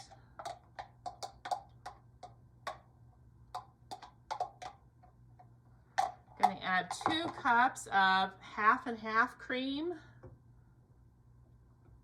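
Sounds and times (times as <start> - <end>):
utensil tapping against dish: 0.0 - 2.9, 3.5 - 4.8.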